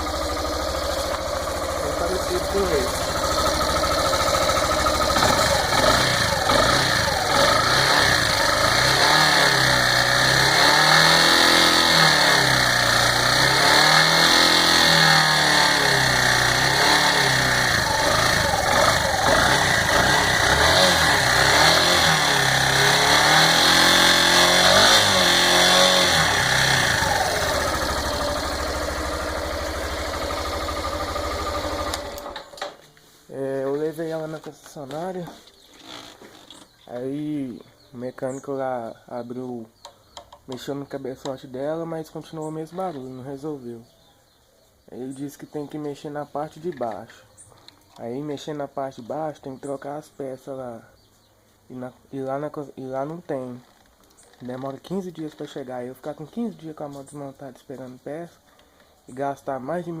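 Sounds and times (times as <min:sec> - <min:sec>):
motorcycle engine revving: 0:00.0 - 0:32.7.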